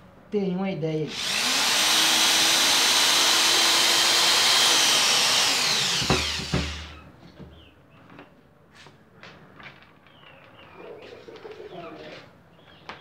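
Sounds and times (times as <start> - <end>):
drill motor whining: 1.1 - 7.0.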